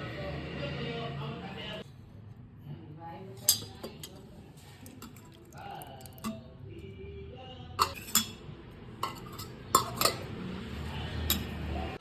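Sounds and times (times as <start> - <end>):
dishes and cutlery clinking: 3.4 - 6.5, 7.8 - 12.0.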